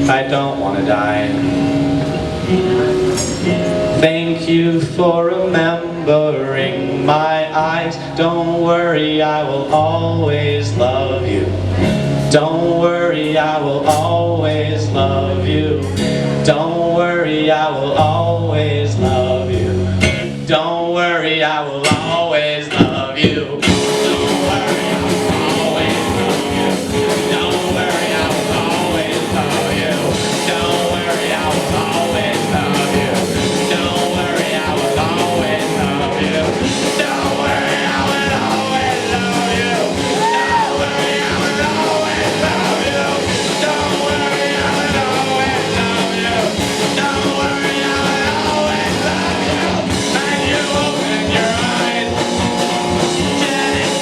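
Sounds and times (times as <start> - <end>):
electric guitars: 0.0 - 20.7, 21.8 - 54.0
steady drum beat: 21.9 - 54.0.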